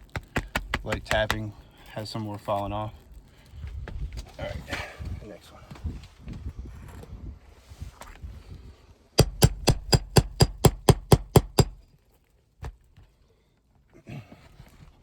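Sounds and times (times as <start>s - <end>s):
hammer striking nail puller: 9.2s - 11.8s.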